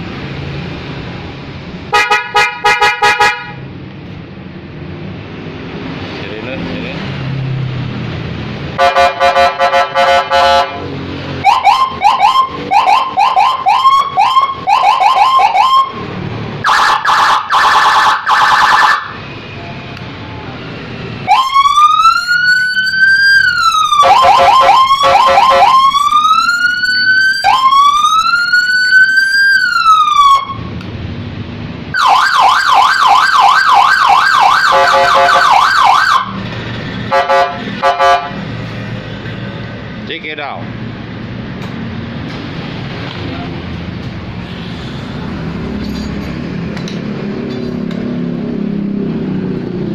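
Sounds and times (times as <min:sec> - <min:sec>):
electronic siren: 0:11.4 - 0:19.4, 0:21.2 - 0:30.8, 0:32.0 - 0:36.4.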